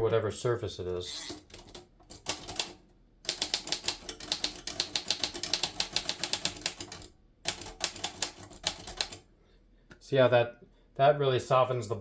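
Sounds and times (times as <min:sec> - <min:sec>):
manual typewriter typing: 0:01.0 - 0:09.2.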